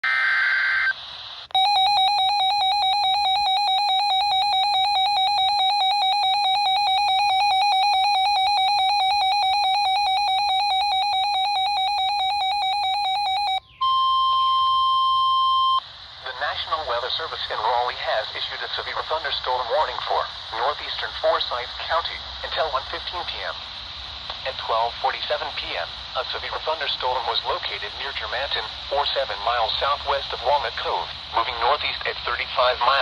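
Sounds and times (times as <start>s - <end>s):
noisy data burst: 0.0s - 13.6s.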